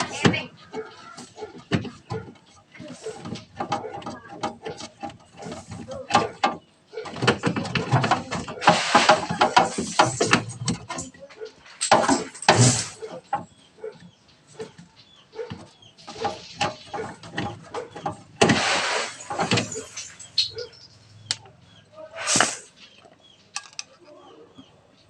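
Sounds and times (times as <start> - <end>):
knocks and clicks handling shelf: 0.0 - 11.2, 11.8 - 13.6, 15.4 - 20.0
metal brackets scraping: 0.0 - 13.6, 15.4 - 21.3.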